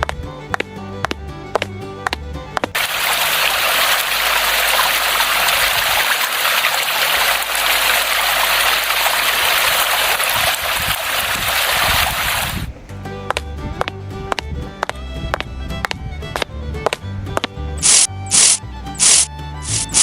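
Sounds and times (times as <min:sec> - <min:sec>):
rushing water: 0:02.7 - 0:12.7, 0:17.8 - 0:20.0.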